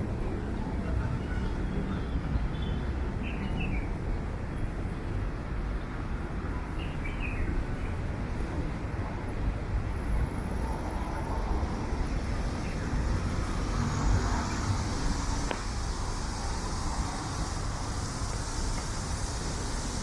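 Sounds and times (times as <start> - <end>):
passing vehicles: 0.0 - 20.0.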